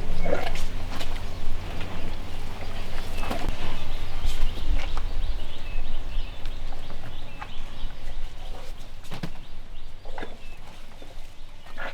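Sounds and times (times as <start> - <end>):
low rumble: 0.0 - 8.6
small birds chirping: 0.0 - 11.9.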